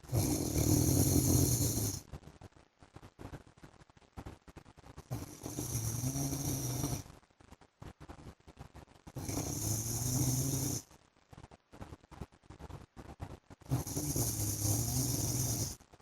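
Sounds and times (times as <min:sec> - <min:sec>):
man snoring: 0:00.0 - 0:02.0, 0:05.1 - 0:07.0, 0:09.2 - 0:10.8, 0:13.7 - 0:15.8.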